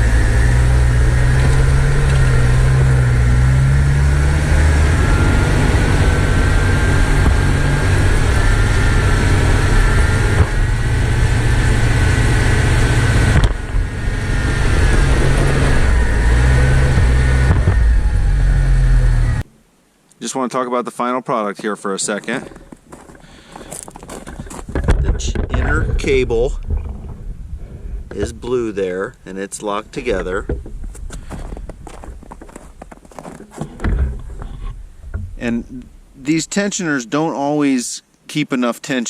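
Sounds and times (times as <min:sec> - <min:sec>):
car engine running: 0:00.0 - 0:19.4.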